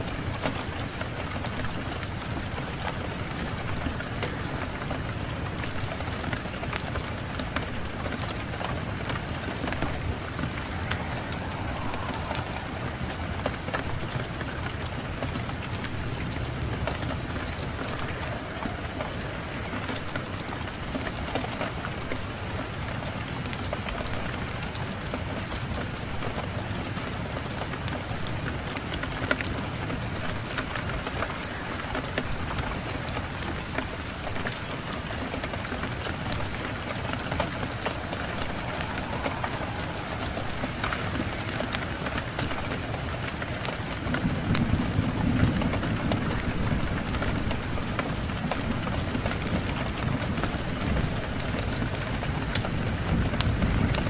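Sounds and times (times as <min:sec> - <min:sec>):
low rush of wind: 0:00.0 - 0:54.0
wood fire crackling and popping: 0:09.7 - 0:12.9, 0:36.1 - 0:50.0.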